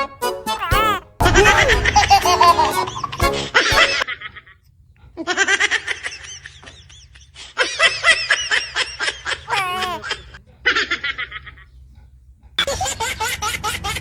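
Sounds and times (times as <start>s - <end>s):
high-pitched laughter: 0.6s - 2.5s, 9.5s - 10.0s.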